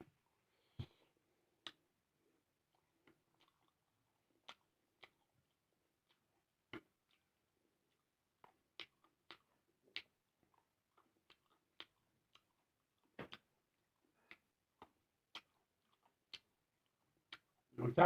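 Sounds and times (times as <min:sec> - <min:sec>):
clicks and smacks of eating: 0:01.6 - 0:17.7.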